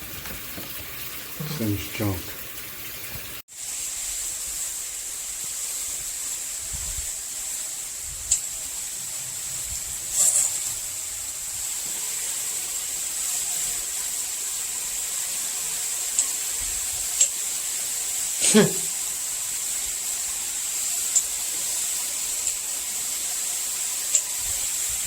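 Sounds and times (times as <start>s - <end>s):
shower head spraying water: 0.0s - 25.0s.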